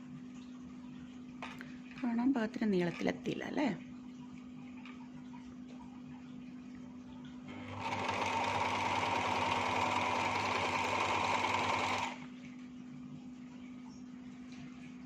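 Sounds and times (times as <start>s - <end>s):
sewing machine stitching: 7.6s - 12.3s.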